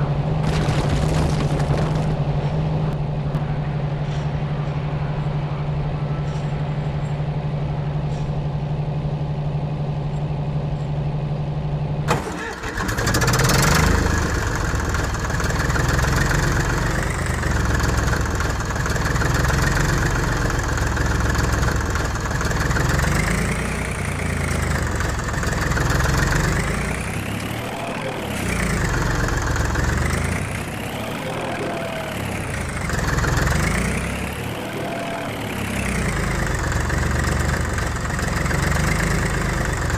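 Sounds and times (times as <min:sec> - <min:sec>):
engine revving: 0:12.1 - 0:39.9.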